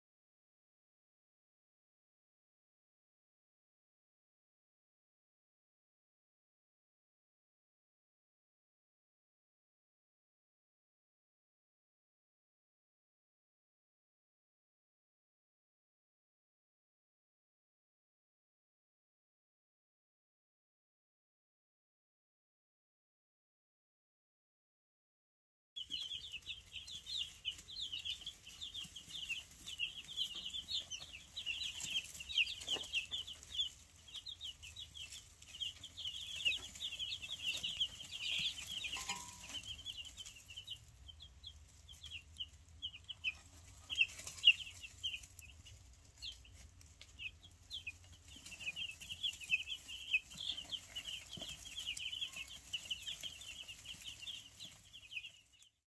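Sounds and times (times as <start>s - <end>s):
chicks peeping: 25.8s - 55.8s.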